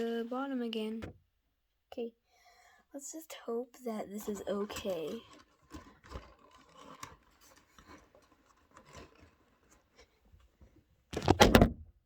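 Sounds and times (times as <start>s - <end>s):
cardboard and plastic pieces rustling: 4.2s - 10.2s, 11.2s - 11.8s
phone falling with a clattering bump: 11.2s - 11.9s.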